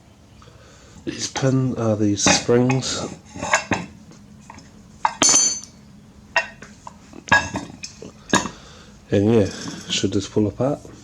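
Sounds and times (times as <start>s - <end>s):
steel parts clinking: 5.0s - 5.8s.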